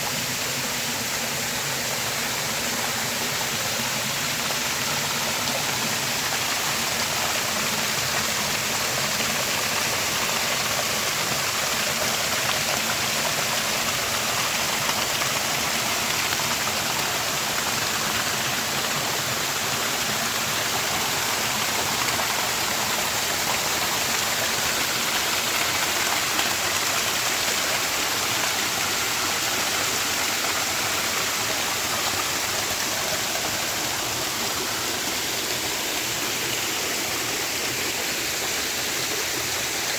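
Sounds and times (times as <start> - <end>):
creek water rushing over cascades: 0.0 - 39.9.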